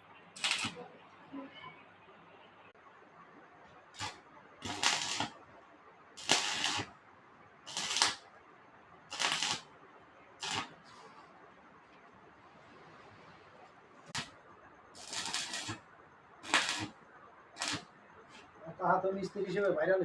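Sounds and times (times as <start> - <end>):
electric arc welding bursts: 0.4 - 0.8, 3.9 - 5.4, 6.2 - 7.0, 7.6 - 8.3, 9.1 - 9.7, 10.4 - 11.1, 14.9 - 15.8, 16.4 - 17.9.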